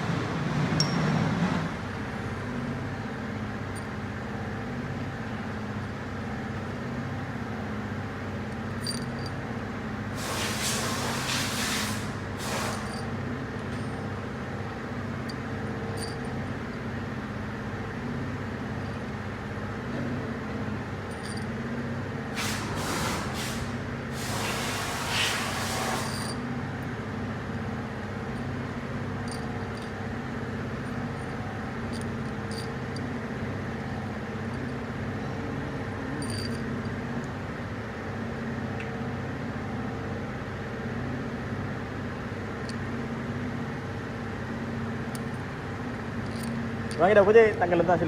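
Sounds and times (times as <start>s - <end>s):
low machine hum: 0.0s - 48.0s
hissing bursts: 10.2s - 13.0s, 22.4s - 26.2s.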